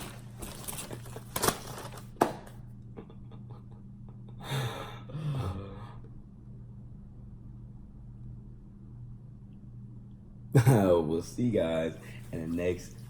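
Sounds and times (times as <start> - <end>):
low electrical hum: 0.0 - 13.0
person sighing: 4.4 - 6.0.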